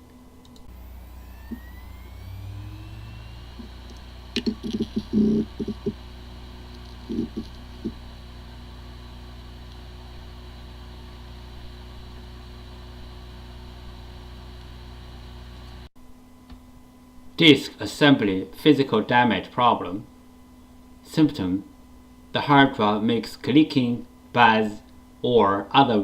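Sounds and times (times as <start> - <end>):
hard drive whir: 0.0 - 15.9
hard drive whine: 0.0 - 26.0
hard drive knocking: 3.5 - 8.2.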